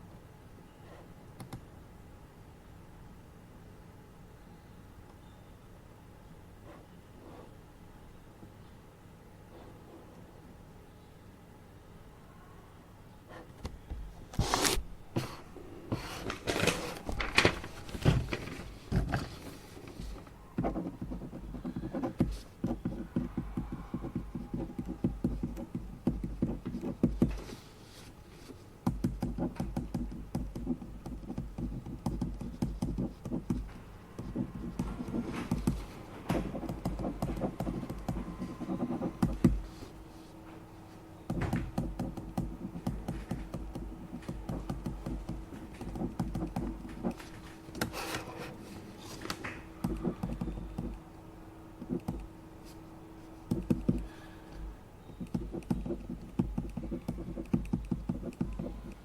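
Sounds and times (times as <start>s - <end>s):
typing on computer keyboard: 41.3s - 47.2s, 49.8s - 51.0s, 55.2s - 59.0s.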